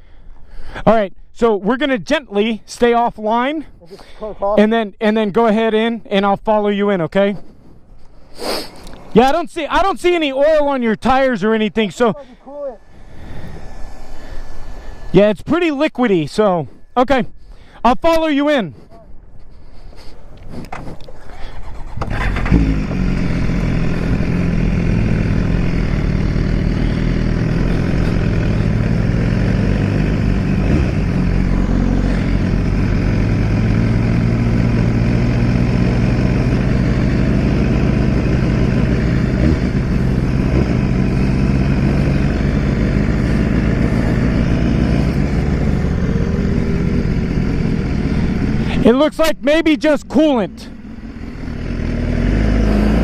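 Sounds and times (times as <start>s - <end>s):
motorcycle engine starting and running: 8.8s - 16.5s, 19.6s - 53.0s.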